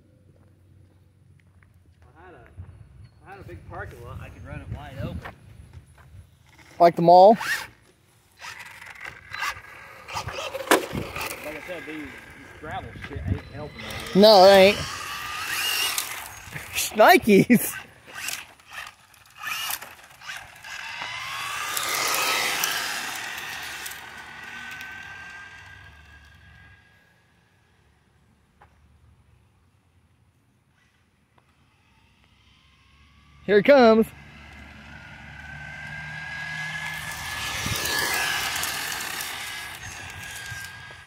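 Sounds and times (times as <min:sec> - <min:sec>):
remote-control car motor whining: 0:06.4 - 0:27.4, 0:30.9 - 0:33.4, 0:34.2 - 0:41.0.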